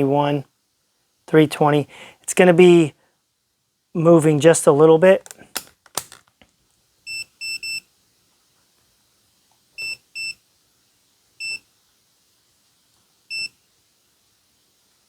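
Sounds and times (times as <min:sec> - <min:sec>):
multimeter short beeps: 0:07.1 - 0:07.8, 0:13.3 - 0:13.6.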